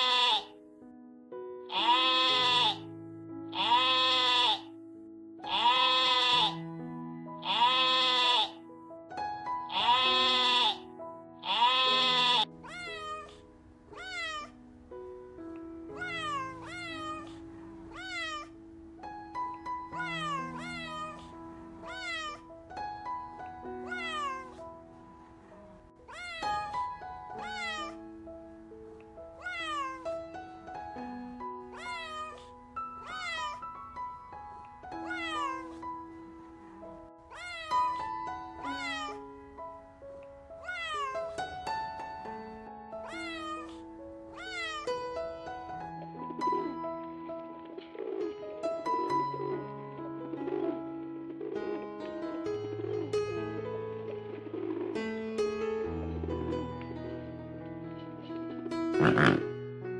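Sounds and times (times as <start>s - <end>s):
cat meowing: 0.0s - 0.5s, 1.7s - 2.8s, 3.6s - 4.7s, 5.5s - 6.6s, 7.4s - 8.6s, 9.7s - 10.8s, 11.4s - 14.6s, 15.9s - 18.6s, 19.9s - 22.5s, 23.8s - 24.6s, 26.1s - 28.0s, 29.4s - 30.3s, 31.7s - 33.8s, 35.0s - 35.8s, 37.3s - 39.3s, 40.6s - 41.4s, 43.0s - 44.9s, 59.0s - 59.4s
loud bleat: 0.0s - 0.5s, 1.7s - 2.8s, 3.5s - 4.7s, 5.4s - 6.6s, 7.4s - 8.6s, 9.7s - 10.8s, 11.4s - 13.3s, 59.0s - 59.5s
background music with held notes: 0.0s - 59.9s.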